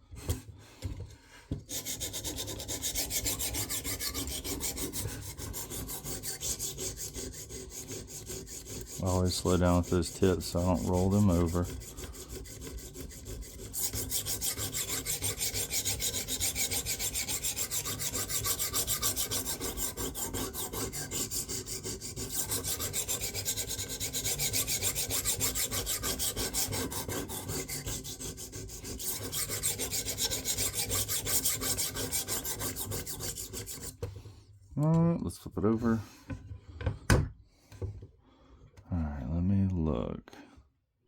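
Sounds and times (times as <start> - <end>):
sharpening stone rasping on knife: 1.7 - 34.0.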